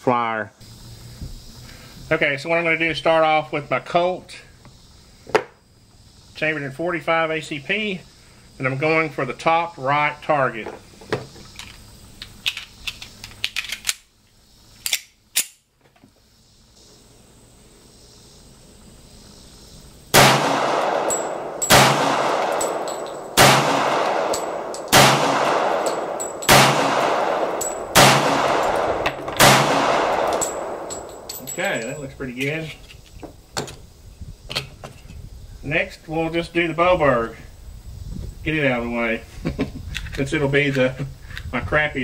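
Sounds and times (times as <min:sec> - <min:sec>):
metallic clicks of gun handling: 0:11.5 - 0:14.1, 0:14.8 - 0:15.6, 0:24.0 - 0:26.6, 0:28.6 - 0:33.8
pistol shots echoing: 0:20.1 - 0:31.9.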